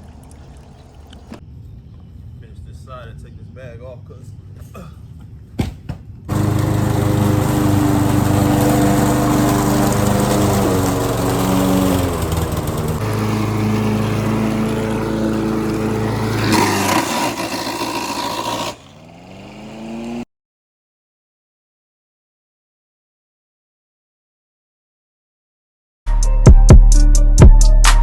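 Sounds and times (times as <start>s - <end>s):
lawn mower engine running: 6.3s - 20.2s.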